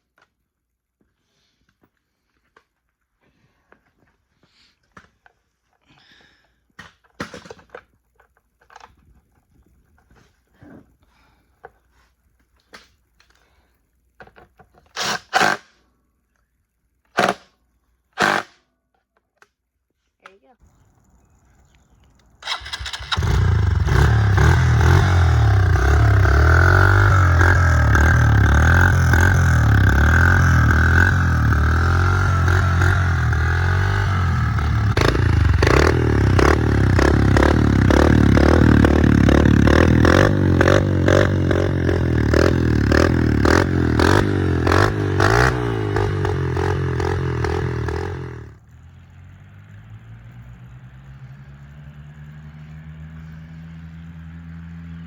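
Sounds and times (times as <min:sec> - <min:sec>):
motorcycle engine revving: 0:22.4 - 0:55.0.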